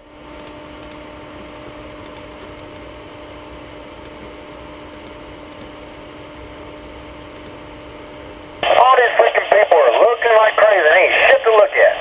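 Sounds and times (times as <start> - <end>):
radio static hiss: 8.6 - 12.0.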